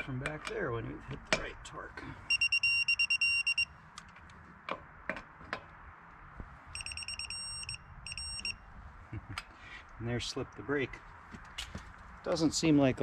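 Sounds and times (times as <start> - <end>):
torque wrench rapid beeping: 2.3 - 3.7, 6.8 - 8.6.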